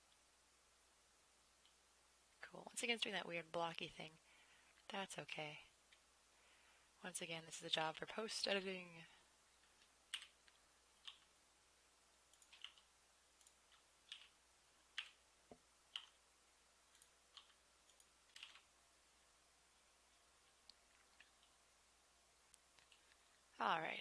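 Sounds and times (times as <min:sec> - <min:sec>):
mouse and keyboard clicking: 0:09.7 - 0:11.3, 0:12.3 - 0:15.2.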